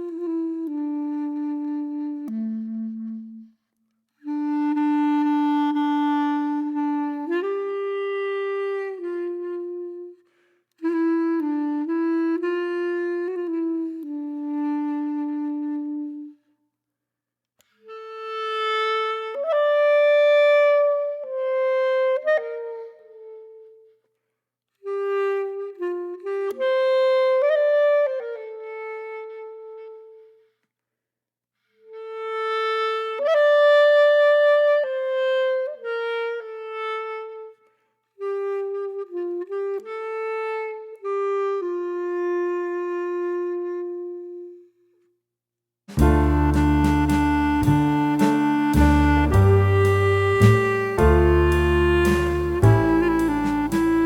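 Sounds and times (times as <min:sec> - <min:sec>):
solo melody of held notes: 0:46.0 - 0:54.0.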